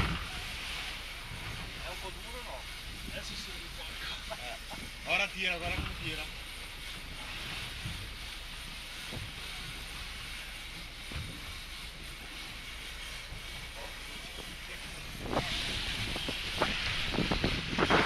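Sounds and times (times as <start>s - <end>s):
wind on microphone: 0.0s - 1.7s, 14.4s - 18.0s
boat engine rumble: 0.0s - 18.0s
water rushing: 0.0s - 18.0s.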